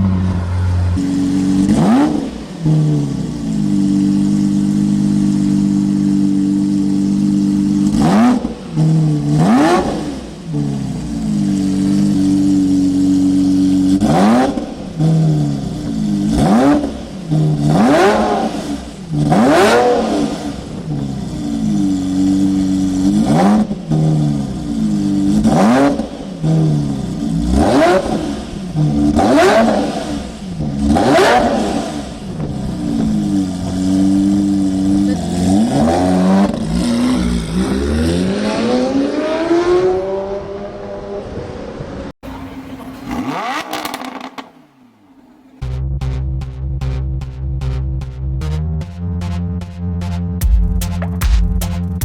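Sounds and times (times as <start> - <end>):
car engine revving hard: 0.0 - 47.8.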